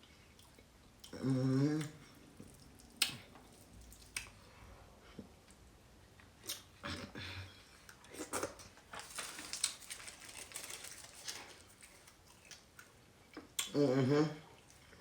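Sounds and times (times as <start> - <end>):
person chewing soft food: 0.0 - 5.6, 10.6 - 13.8.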